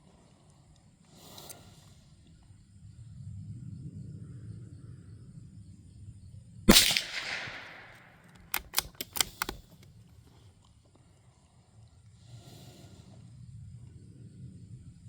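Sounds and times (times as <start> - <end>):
rifle shot: 6.7 - 9.6
rifle bolt clicking: 6.7 - 9.8.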